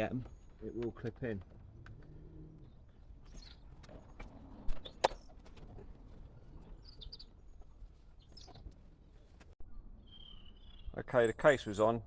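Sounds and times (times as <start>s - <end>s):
birds chirping faintly: 6.2s - 12.0s.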